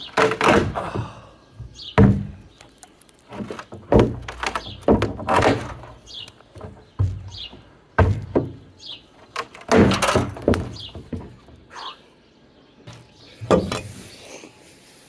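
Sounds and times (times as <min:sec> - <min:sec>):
hollow wooden thuds and knocks: 0:00.1 - 0:02.6, 0:03.3 - 0:11.7, 0:12.9 - 0:13.9.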